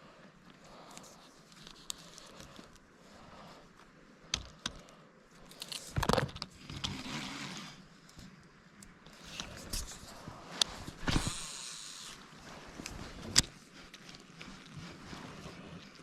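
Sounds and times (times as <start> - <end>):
rustling and crinkling handling: 12.2 - 16.0.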